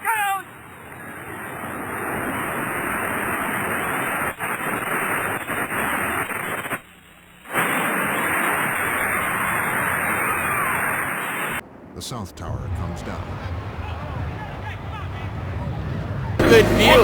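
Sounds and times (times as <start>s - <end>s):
building collapsing rumble: 11.6s - 17.0s.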